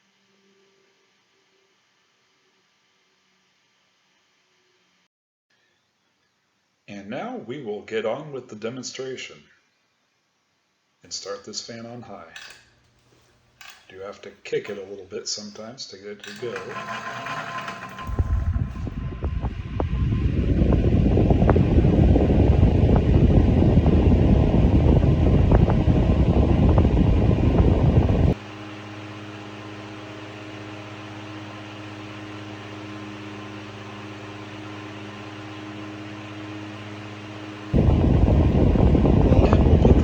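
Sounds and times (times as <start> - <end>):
electric motor hum: 16.5 - 28.4, 29.0 - 40.0
fan air rushing: 16.7 - 28.4, 29.6 - 40.0.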